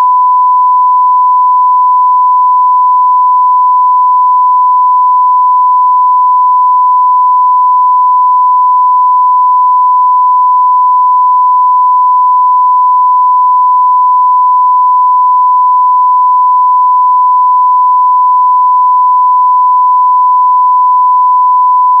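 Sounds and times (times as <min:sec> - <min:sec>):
sine-wave test tone: 0:00.0 - 0:22.0.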